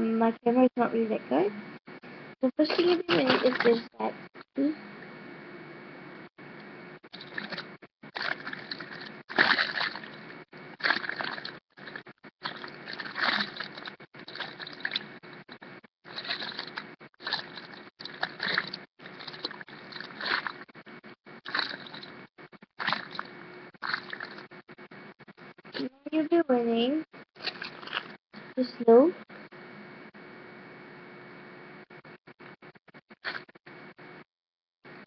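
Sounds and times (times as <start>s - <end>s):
toys rustling and crackling: 2.6s - 4.1s, 27.4s - 28.2s.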